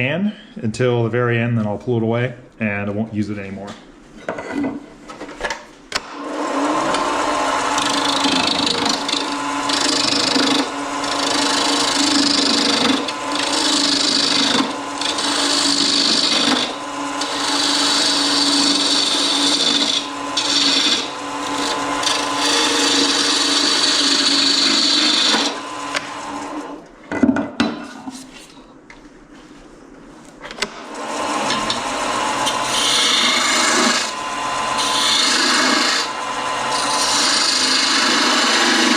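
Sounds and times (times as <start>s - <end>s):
wood lathe motor hum: 6.1s - 26.8s, 30.9s - 38.9s
turning tool scraping wood: 6.6s - 26.6s, 30.9s - 38.9s.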